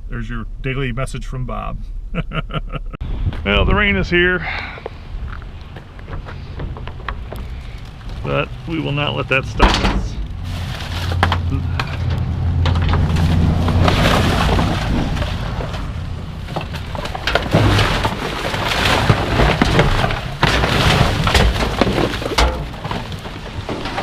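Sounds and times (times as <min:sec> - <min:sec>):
low rumble: 0:00.0 - 0:20.4
rain pattering: 0:05.3 - 0:18.2.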